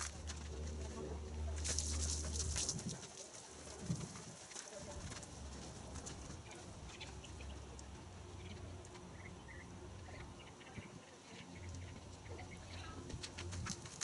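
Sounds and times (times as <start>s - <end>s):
bird chirps: 8.4s - 12.9s.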